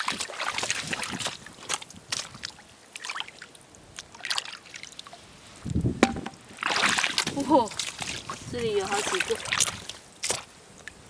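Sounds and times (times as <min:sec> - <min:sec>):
low thump: 0:06.0 - 0:06.4.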